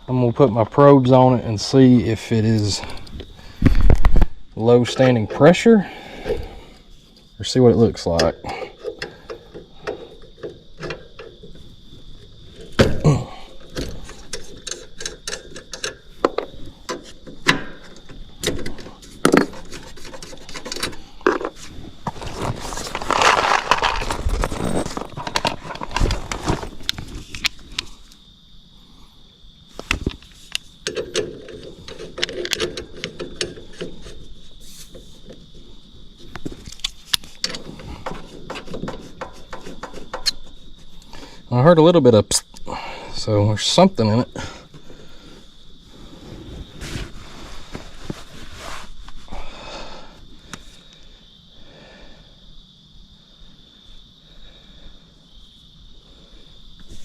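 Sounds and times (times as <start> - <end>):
refrigerant hiss: 5.5 - 10.2, 33.9 - 35.9, 40.7 - 52.4.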